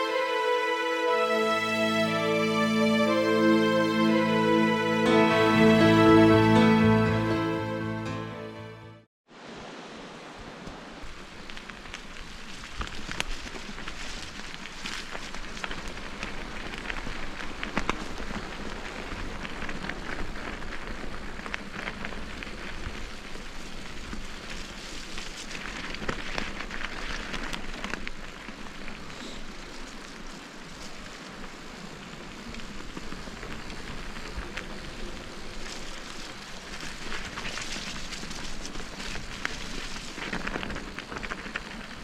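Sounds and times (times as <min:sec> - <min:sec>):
bicycle tyres crackling on track: 0:10.5 - 0:42.0.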